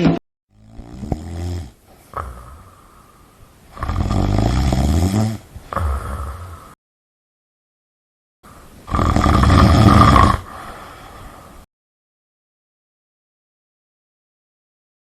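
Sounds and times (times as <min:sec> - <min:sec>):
person snoring: 0:00.5 - 0:06.8, 0:08.9 - 0:11.5.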